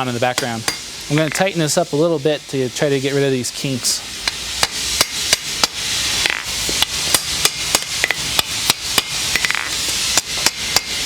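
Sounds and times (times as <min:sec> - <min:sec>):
gas torch hissing: 0:00.0 - 0:11.0
hammer striking steel on anvil: 0:00.3 - 0:01.4, 0:04.2 - 0:11.0.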